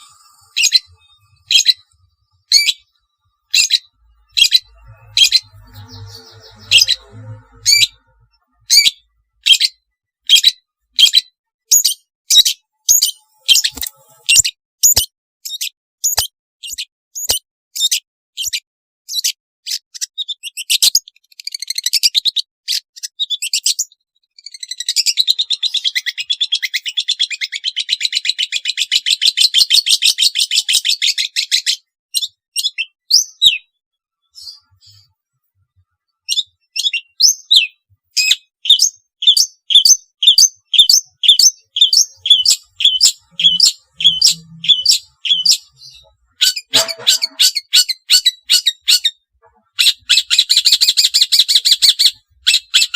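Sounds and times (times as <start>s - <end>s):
harsh bird call: 0.0s - 14.5s, 40.2s - 52.9s
bird rapid trill: 0.0s - 33.7s, 36.2s - 52.9s
repeated sharp bird notes: 0.0s - 35.2s, 35.9s - 52.9s.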